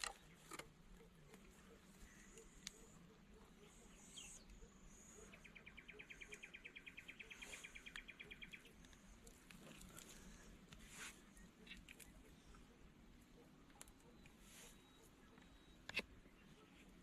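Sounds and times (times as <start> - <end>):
faint high chirps: 11.3 - 16.9.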